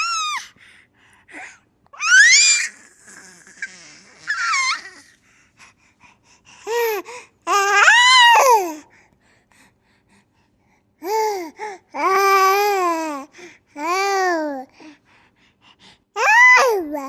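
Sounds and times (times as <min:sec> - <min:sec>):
baby squealing and laughing: 0:00.0 - 0:00.5, 0:02.0 - 0:05.1.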